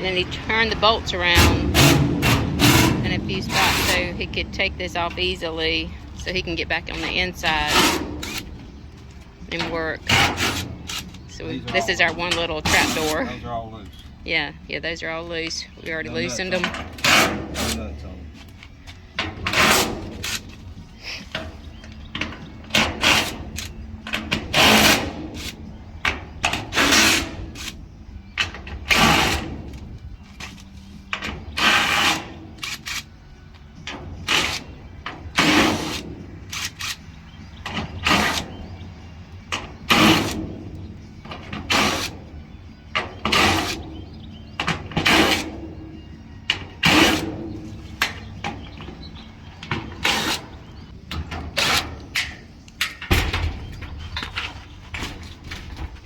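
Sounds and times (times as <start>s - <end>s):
low steady rumble: 0.0s - 16.6s.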